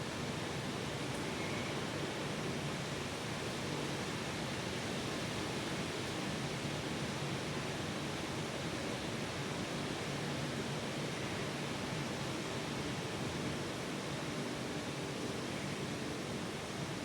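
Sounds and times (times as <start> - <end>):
rain falling steadily: 0.0 - 17.0.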